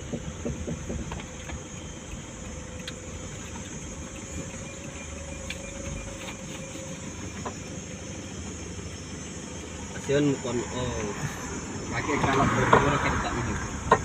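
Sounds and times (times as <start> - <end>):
faint steady whine: 0.0 - 14.0
vehicle engine running: 0.0 - 14.0.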